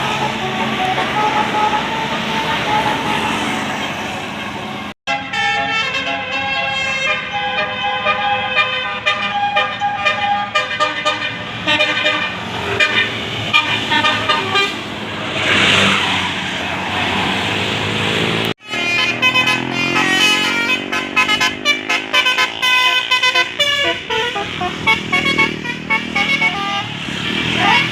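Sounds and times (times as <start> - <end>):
musical air horn tune: 0.0 - 3.7, 5.1 - 14.9, 18.6 - 27.0.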